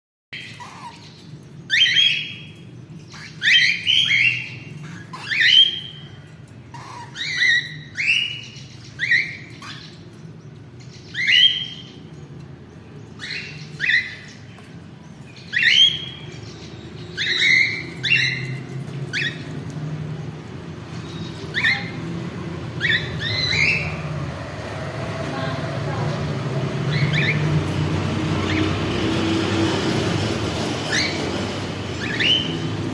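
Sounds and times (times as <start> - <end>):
chicks squawking calls: 0.4 - 2.4, 3.0 - 12.1, 20.8 - 25.0.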